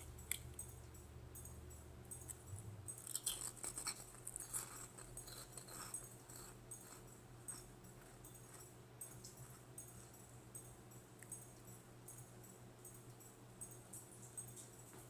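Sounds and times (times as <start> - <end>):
low steady hum: 0.0 - 15.0
crunching of snacks being chewed: 2.1 - 10.2.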